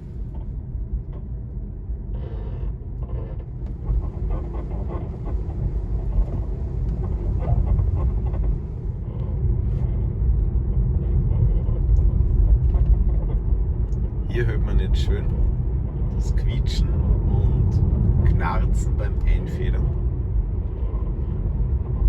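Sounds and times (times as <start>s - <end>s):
low rumble: 0.0s - 22.0s.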